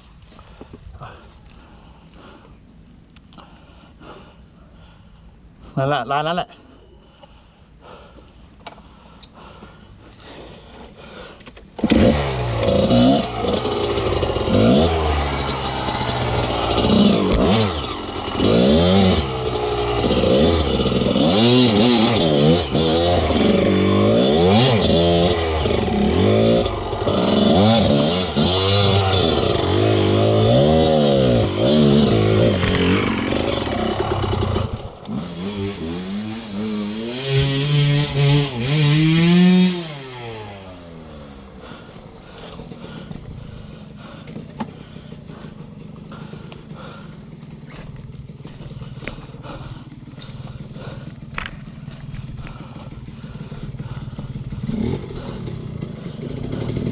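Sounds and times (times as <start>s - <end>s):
dirt bike engine revving: 11.8s - 56.9s.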